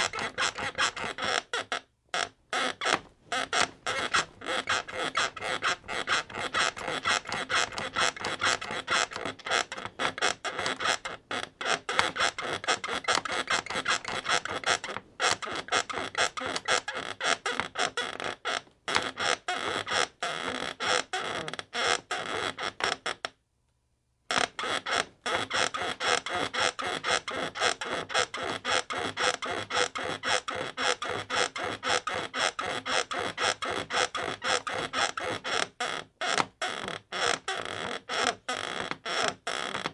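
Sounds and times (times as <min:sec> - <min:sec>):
bed frame creaking rhythmically: 0:00.0 - 0:01.5, 0:02.2 - 0:17.4.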